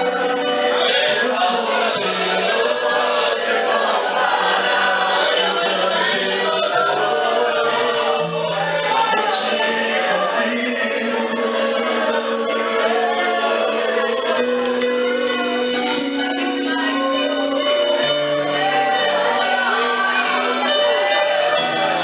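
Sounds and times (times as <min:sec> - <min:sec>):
choir singing with band: 0:00.0 - 0:22.0.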